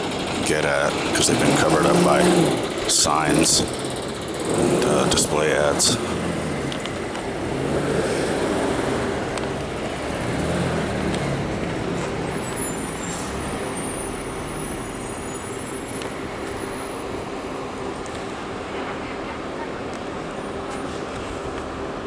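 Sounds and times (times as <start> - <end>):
vehicles passing: 0.0 - 22.0.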